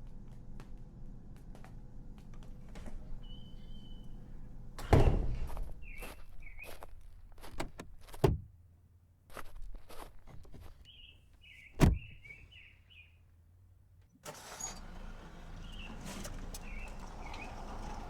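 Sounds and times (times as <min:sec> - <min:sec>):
noisy background with low rumble: 0:00.0 - 0:05.8
heavy thump: 0:04.8 - 0:05.8, 0:07.4 - 0:08.5, 0:11.8 - 0:12.2.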